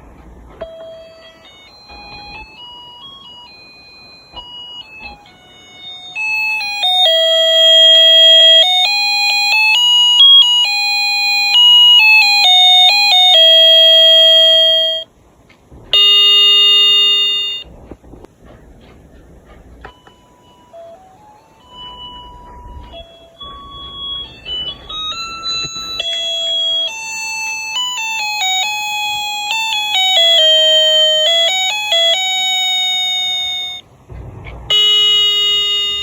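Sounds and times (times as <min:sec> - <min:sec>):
clock chime tune: 0:00.6 - 0:15.1, 0:16.0 - 0:17.7, 0:19.9 - 0:33.8
clock bell strike: 0:16.0 - 0:17.7, 0:21.8 - 0:33.8.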